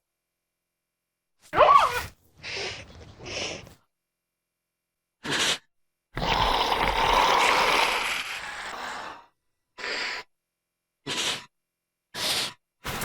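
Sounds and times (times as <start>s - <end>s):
creature breathy huffs: 2.4s - 3.8s, 5.2s - 10.3s, 11.1s - 11.5s, 12.2s - 13.0s
creature breathy hiss: 5.2s - 5.6s, 6.2s - 10.2s, 11.1s - 11.5s, 12.2s - 13.0s.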